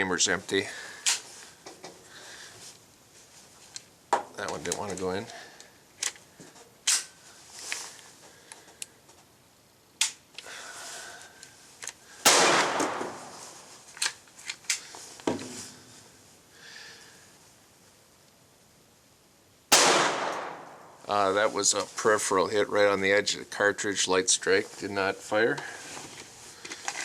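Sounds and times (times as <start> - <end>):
gunshot with long echo: 12.3 - 13.6, 19.7 - 21.0
metallic pistol clicks: 19.8 - 20.8.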